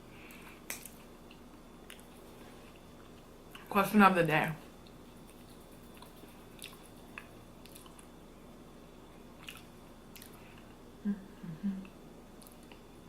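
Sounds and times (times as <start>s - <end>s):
chewing food: 4.8s - 8.1s, 9.4s - 10.7s
wet mouth clicks: 5.4s - 8.0s.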